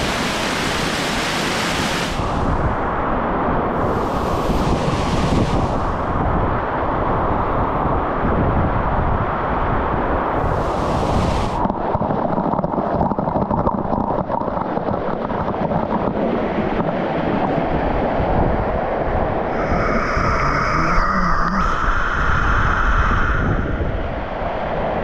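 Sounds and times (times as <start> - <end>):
steady high tones: 19.5 - 24.0.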